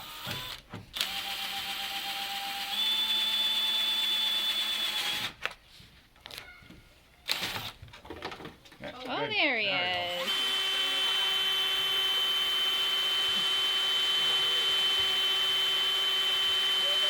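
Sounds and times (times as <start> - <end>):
power drill boring whine: 0.0 - 5.3, 9.9 - 17.0.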